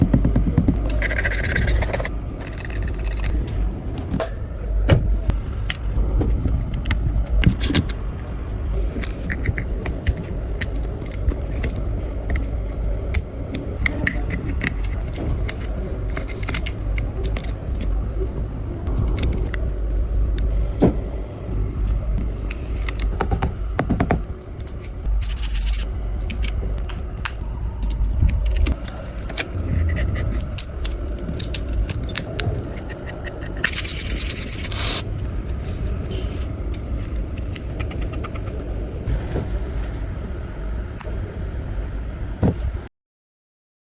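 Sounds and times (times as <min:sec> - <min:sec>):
steady low hum: 0:00.0 - 0:42.9
tools clicking and tapping on phone: 0:25.2 - 0:25.8.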